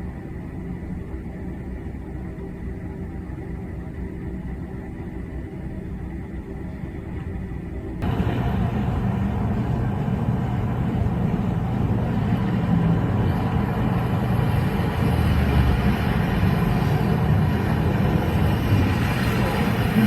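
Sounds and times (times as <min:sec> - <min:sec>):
vehicle engine and road rumble: 0:08.0 - 0:20.0.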